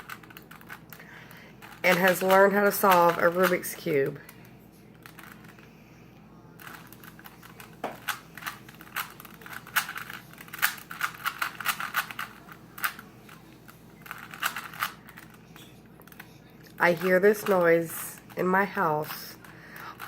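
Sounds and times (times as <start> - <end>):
plastic puzzle cube clicking: 8.0 - 13.4, 14.0 - 15.4.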